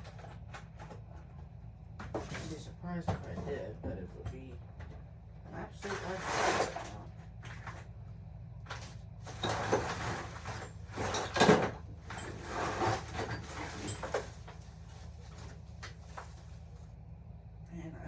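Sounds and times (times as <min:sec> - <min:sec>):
small objects clattering in drawer: 0:08.7 - 0:16.4.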